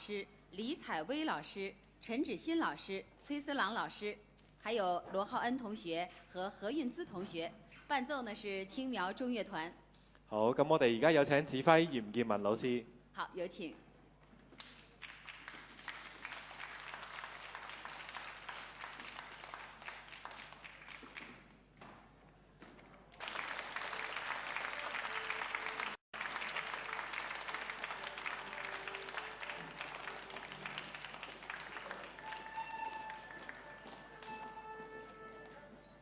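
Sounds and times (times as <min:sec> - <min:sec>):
audience applauding: 0:14.6 - 0:21.4, 0:23.1 - 0:35.7.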